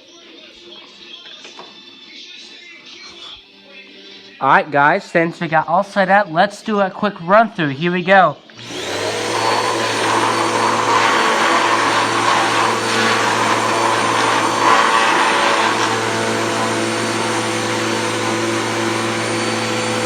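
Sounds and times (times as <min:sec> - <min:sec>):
upright vacuum cleaner running: 0:08.5 - 0:20.0.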